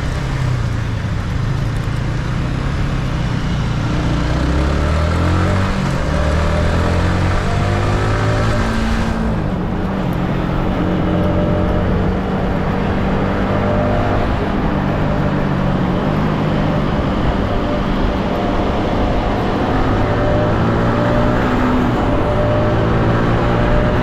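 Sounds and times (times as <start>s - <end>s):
motorcycle engine running: 0.0s - 24.0s.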